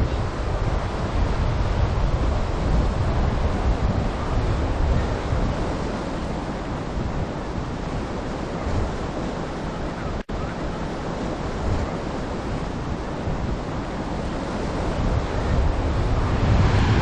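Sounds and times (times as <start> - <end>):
ocean surf washing: 0.0 - 17.0
wind buffeting microphone: 0.0 - 17.0.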